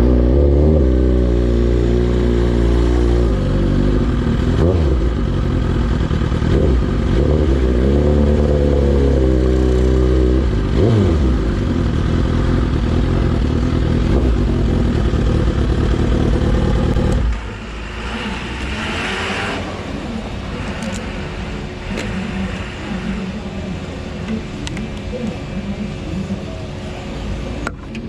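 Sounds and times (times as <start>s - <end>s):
motorcycle engine revving: 0.0s - 24.1s.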